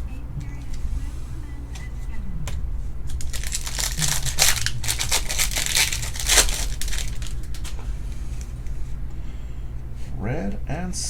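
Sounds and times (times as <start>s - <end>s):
foil wrapper crinkling and tearing: 3.1s - 8.6s.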